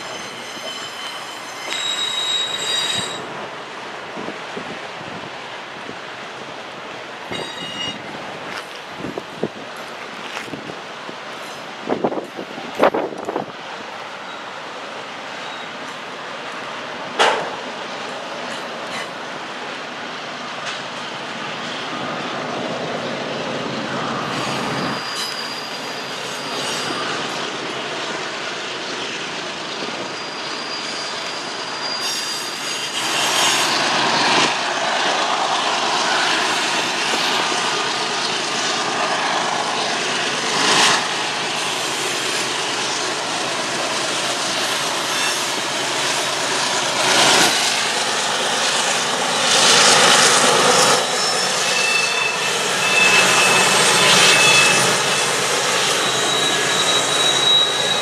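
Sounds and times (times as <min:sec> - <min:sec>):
wheel flange squeals: 0:00.0 - 0:03.3, 0:07.3 - 0:08.1, 0:15.4 - 0:15.8, 0:24.2 - 0:27.3, 0:29.9 - 0:33.8, 0:45.0 - 0:45.6, 0:48.6 - 0:58.0
freight train wheels rumbling: 0:00.0 - 0:58.0
wind buffeting microphone: 0:06.8 - 0:13.7.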